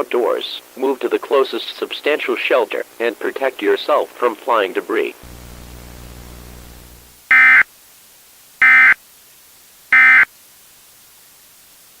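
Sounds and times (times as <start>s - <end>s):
buzzy digital data bursts: 5.2s - 7.6s.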